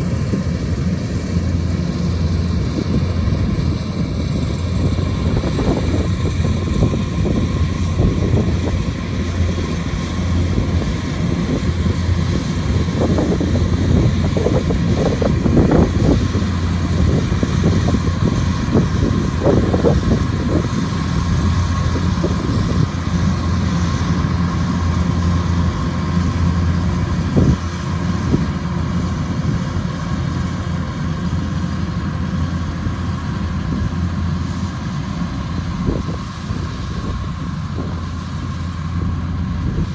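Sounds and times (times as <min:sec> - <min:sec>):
diesel engine hum: 0:00.0 - 0:39.9.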